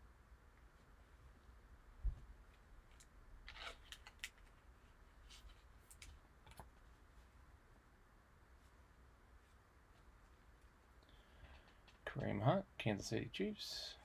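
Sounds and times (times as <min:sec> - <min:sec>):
cards rustling: 0:02.9 - 0:06.7.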